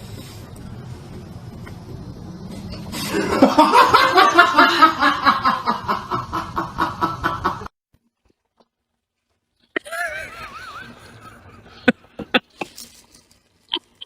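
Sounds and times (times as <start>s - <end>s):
person laughing hard: 3.0s - 7.7s, 9.8s - 12.6s.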